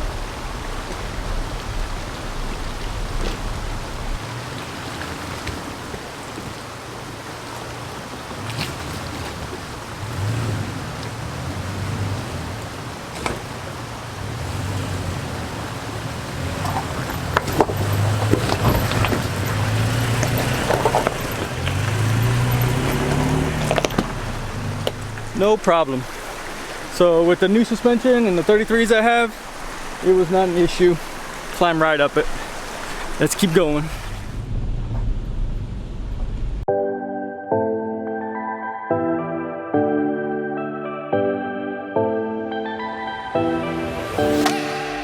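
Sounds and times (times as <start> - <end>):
stream rushing: 0.0 - 34.5, 42.6 - 45.0
pickup truck engine revving: 9.8 - 27.5.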